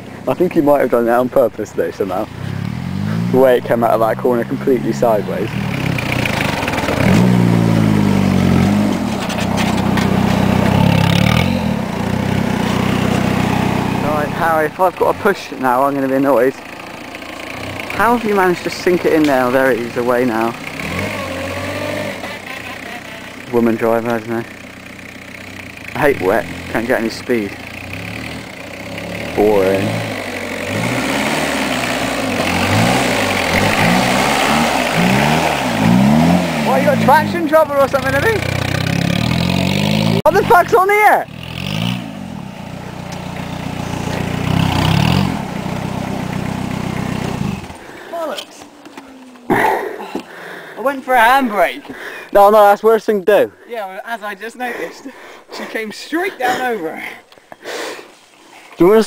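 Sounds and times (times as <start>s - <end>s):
car engine revving hard: 2.4s - 16.0s, 16.9s - 22.5s, 26.0s - 40.7s, 41.3s - 47.9s.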